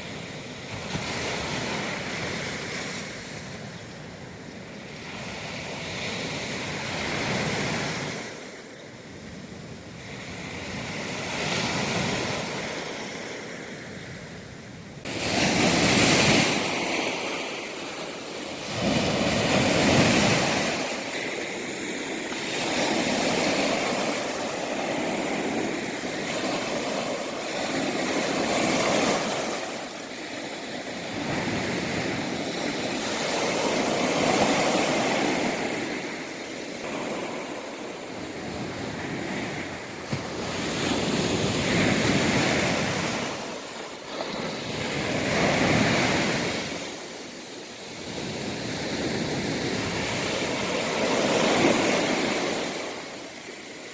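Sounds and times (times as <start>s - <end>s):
waves breaking on shore: 0.0s - 53.9s.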